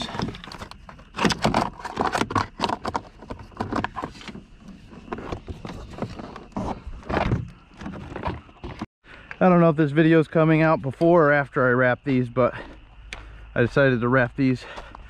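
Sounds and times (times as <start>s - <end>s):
car door parts clicking and rattling: 0.0s - 8.8s.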